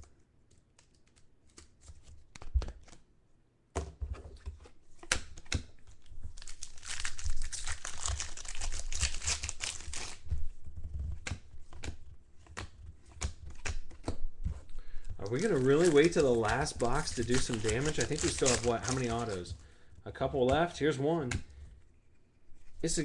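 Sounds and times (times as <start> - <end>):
card pack wrappers crinkling: 5.9 - 10.3, 14.8 - 20.8.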